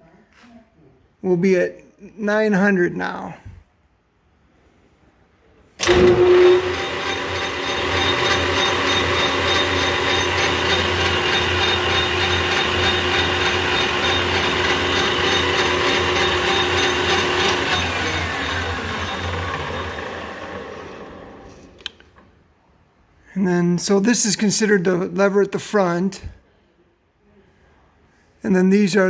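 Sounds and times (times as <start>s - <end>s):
gearing tones: 5.8s - 21.8s
lathe motor hum: 5.8s - 21.8s.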